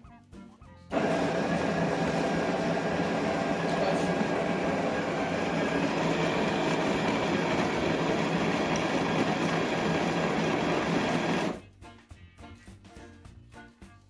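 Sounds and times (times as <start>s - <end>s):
coffee grinder grinding beans: 0.9s - 11.6s.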